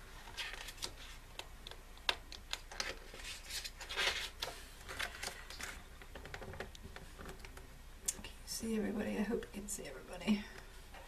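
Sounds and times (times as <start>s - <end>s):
paper pages rustling: 0.2s - 6.2s.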